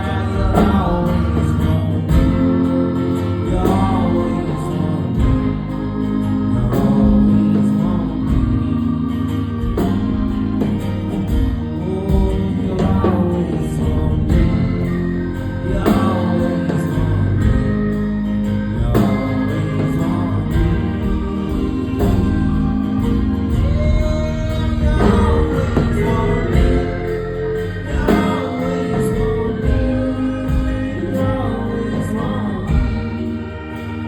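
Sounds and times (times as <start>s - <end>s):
instrumental accompaniment: 0.0s - 34.0s.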